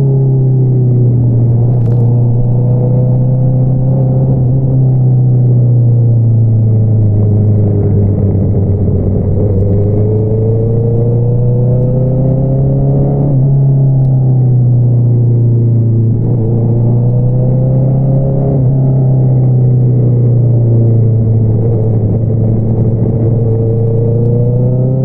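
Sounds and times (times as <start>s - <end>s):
motorcycle engine running: 0.6s - 12.8s, 18.7s - 24.8s.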